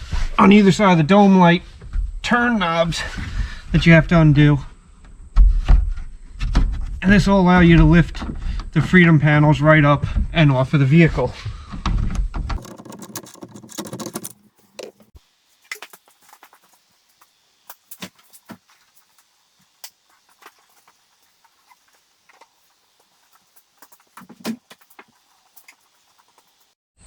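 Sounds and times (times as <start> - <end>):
handling clicks and knocks: 12.6 - 15.2.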